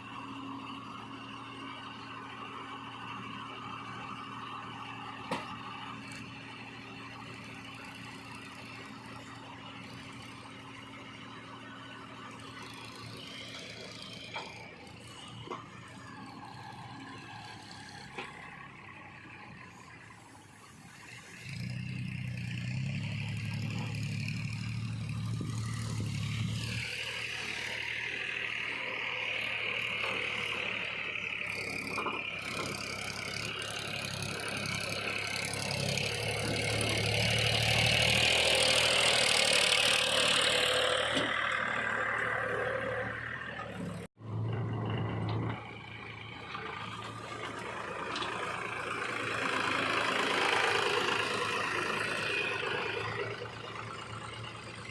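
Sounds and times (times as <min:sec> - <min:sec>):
heavy diesel machinery engine revving: 0:00.0 - 0:54.9.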